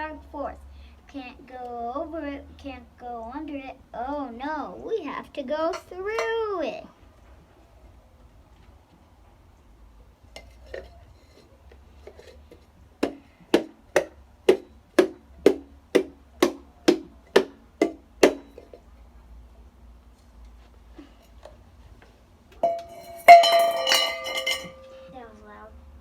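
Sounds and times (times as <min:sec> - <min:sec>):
sharp hollow knocks: 0:13.0 - 0:18.6
handling clatter: 0:22.6 - 0:25.1.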